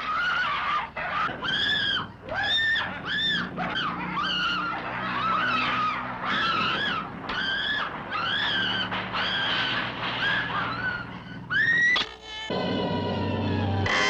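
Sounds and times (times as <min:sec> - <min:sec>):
steady low hum: 0:12.5 - 0:14.0.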